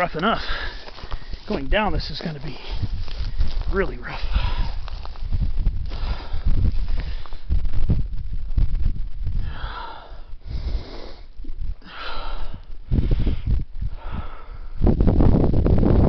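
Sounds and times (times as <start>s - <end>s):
low thumps and rumble: 2.7s - 10.5s, 12.4s - 16.0s
man panting: 4.1s - 4.9s, 5.9s - 7.4s, 9.4s - 14.8s.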